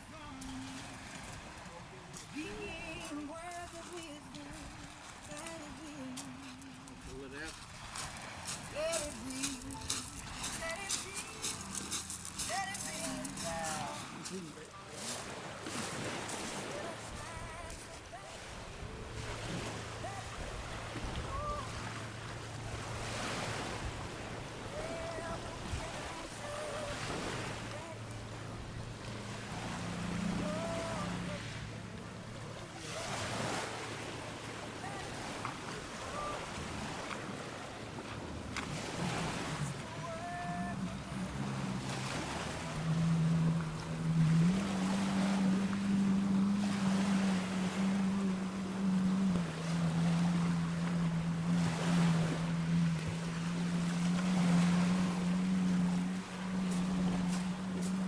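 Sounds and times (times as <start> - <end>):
low steady hum: 0.0 - 14.9, 16.4 - 58.0
boat engine running: 0.0 - 58.0
sea waves washing: 0.0 - 58.0
water noise: 0.0 - 58.0
wind on microphone: 15.7 - 33.6, 34.8 - 58.0.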